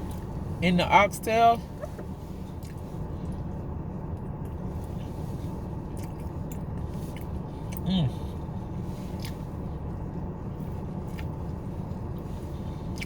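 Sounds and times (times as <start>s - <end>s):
low hum inside car: 0.0s - 13.0s
person chewing food: 2.5s - 3.5s, 5.8s - 9.6s, 10.6s - 13.0s.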